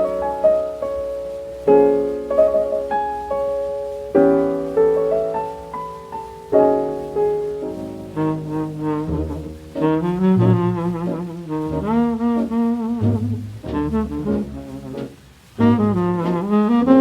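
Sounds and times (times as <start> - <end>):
jazz ballad on old record: 0.0 - 17.0
piano chords: 0.0 - 17.0
tenor saxophone with vibrato: 8.1 - 17.0.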